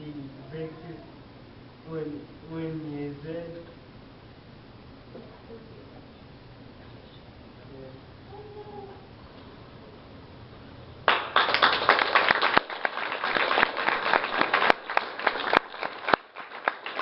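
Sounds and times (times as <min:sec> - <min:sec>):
audience applauding: 0:11.1 - 0:17.0.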